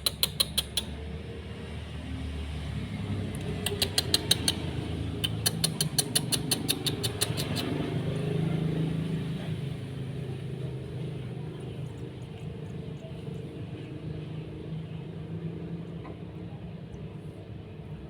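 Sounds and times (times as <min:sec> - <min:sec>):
low engine-like hum: 0:00.0 - 0:18.0
nestlings chirping: 0:03.4 - 0:09.3.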